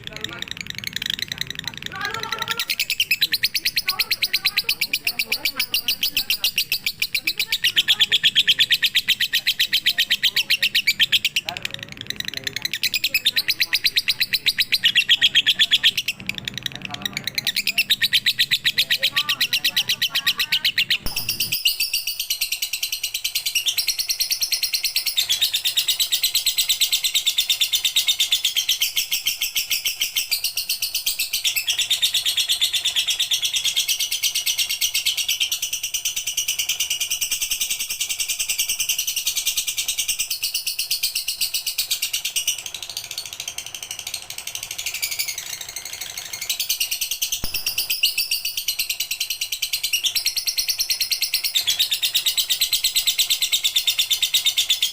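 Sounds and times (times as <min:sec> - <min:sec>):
lovebird chattering: 0:00.0 - 0:54.9.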